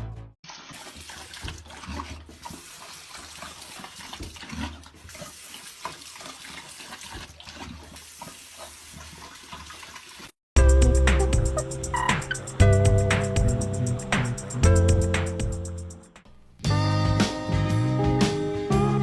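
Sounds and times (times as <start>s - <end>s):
water running from a tap: 0.5s - 15.6s.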